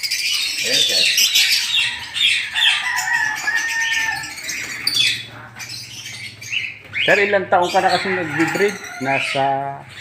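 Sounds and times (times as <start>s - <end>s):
lovebirds chattering and screeching: 0.0s - 10.0s.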